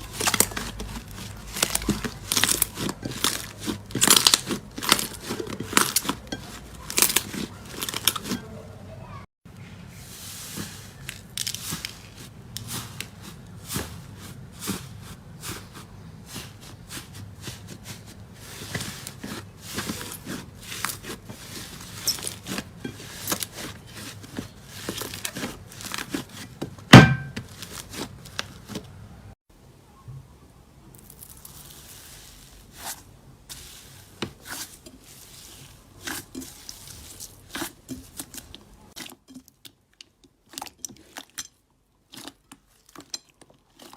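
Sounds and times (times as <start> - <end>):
slime crackling and popping: 0.0 - 8.3.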